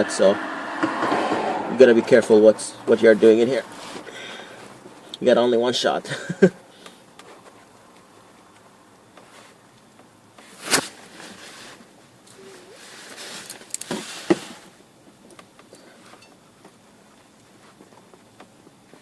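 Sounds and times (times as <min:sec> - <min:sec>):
rustling handling noise: 0:03.6 - 0:05.2, 0:07.0 - 0:19.0.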